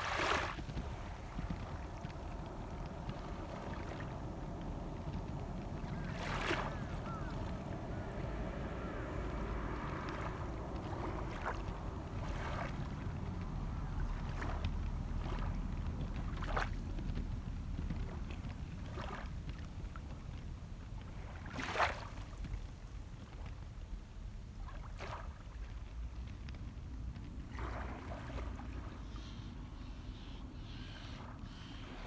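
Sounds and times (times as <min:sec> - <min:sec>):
low wind rumble: 0:00.0 - 0:24.7
small waves washing onto shore: 0:00.0 - 0:29.8.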